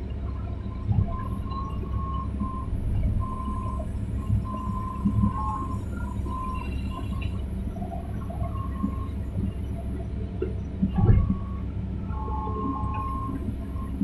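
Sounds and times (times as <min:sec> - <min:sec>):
excavator engine drone: 0:00.0 - 0:14.0.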